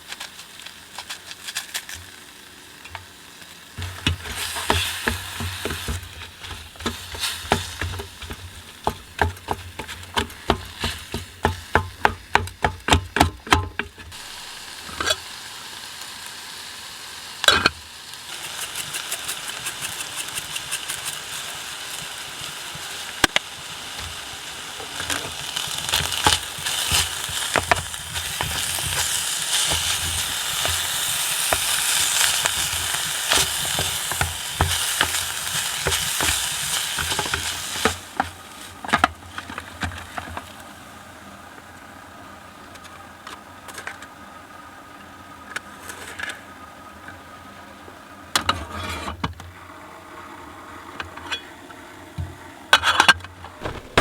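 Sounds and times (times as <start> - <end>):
meat sizzling in a pan: 0.0 - 41.2
utensil tapping a pan: 3.8 - 15.2, 25.9 - 38.3.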